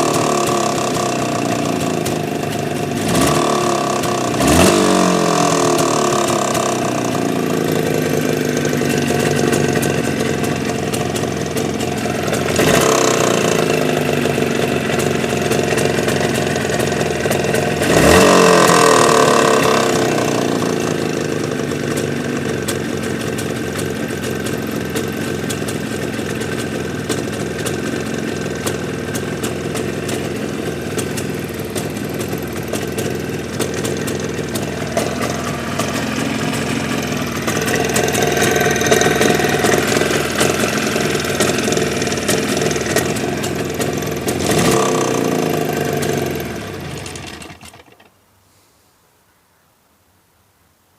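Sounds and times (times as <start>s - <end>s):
engine idling and revving: 0.0s - 48.1s.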